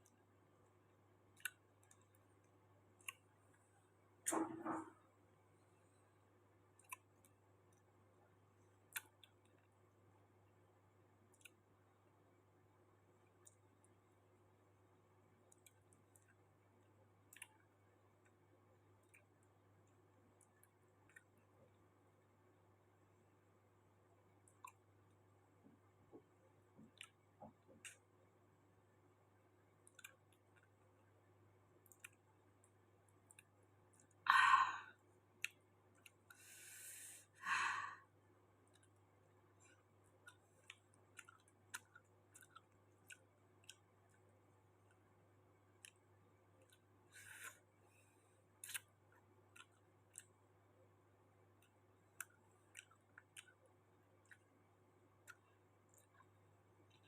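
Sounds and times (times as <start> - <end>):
wet chewing and lip clicks: 0.0 - 3.6, 6.7 - 8.0, 8.6 - 9.8, 11.3 - 11.7, 13.2 - 14.0, 15.4 - 21.8, 24.1 - 28.2, 29.6 - 31.2, 31.8 - 34.2, 35.3 - 36.4, 38.6 - 47.6, 48.5 - 50.6, 51.4 - 57.0.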